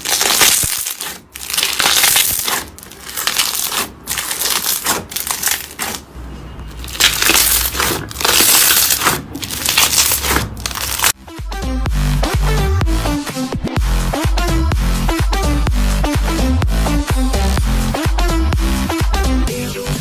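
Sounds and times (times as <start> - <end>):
slime squeezed by hand: 0.0 - 6.0, 6.8 - 11.2.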